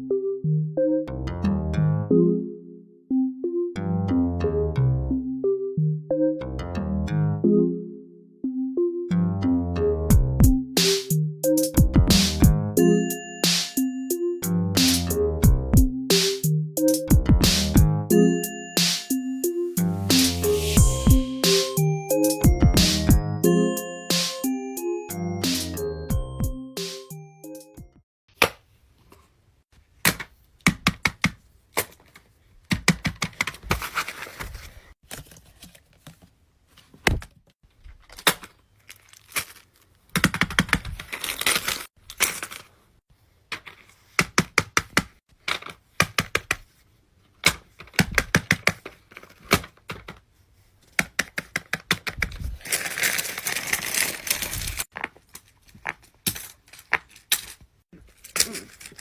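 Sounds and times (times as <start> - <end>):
wrapping crinkling and rustling: 33.6 - 36.9, 37.7 - 40.2, 40.8 - 43.0, 52.3 - 59.0.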